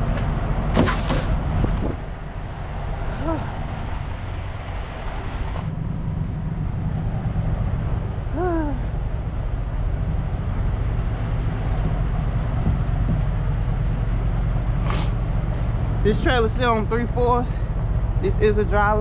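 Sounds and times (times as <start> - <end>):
diesel truck engine idling: 0.0 - 19.0.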